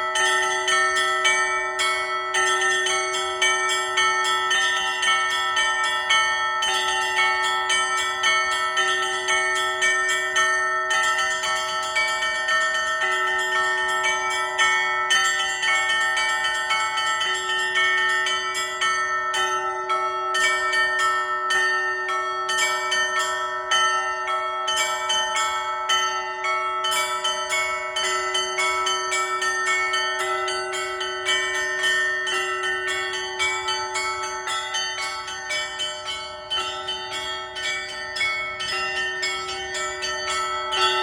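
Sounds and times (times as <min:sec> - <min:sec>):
small high bells ringing: 0:00.0 - 0:41.0
deep bell struck: 0:37.6 - 0:41.0.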